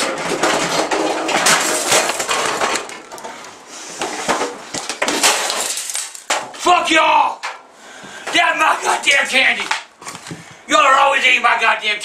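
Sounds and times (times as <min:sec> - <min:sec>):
dishes and pots crashing: 0:00.0 - 0:03.0, 0:04.3 - 0:06.5.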